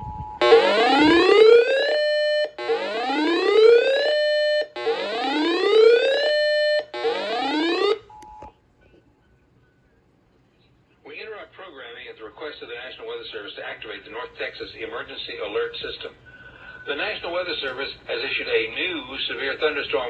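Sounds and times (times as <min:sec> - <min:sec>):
electronic whooping alarm: 0:00.4 - 0:08.0.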